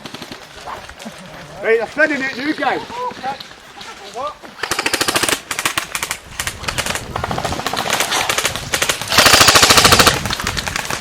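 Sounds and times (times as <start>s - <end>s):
airsoft guns firing full auto: 4.6s - 11.0s.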